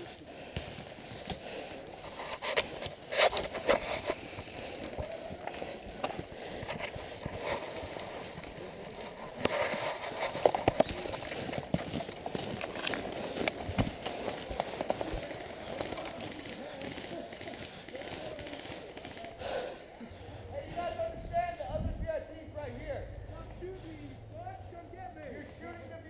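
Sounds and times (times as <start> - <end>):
footsteps on dry brush: 0.0 - 19.4.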